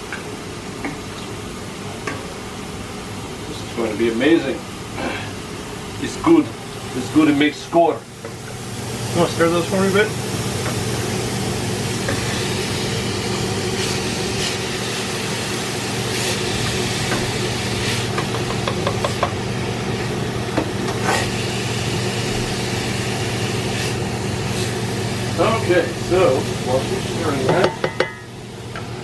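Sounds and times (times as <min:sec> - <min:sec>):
kitchen fan humming: 0:00.0 - 0:29.0
spoon stirring in a pot: 0:27.4 - 0:28.3.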